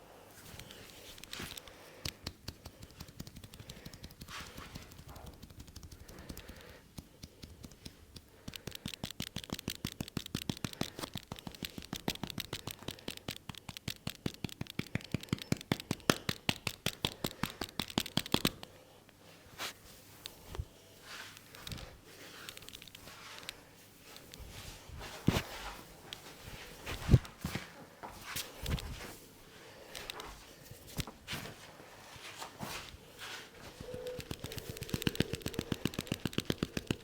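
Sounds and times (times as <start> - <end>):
rubbing on hair and skin: 0.4 - 9.4, 19.3 - 37.0
hands slapping and tapping: 0.5 - 18.8, 19.6 - 37.0.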